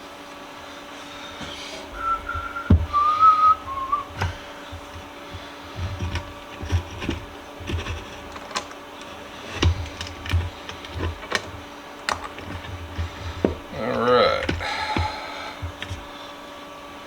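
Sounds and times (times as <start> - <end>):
metal parts clicking and knocking: 6.0 - 16.2.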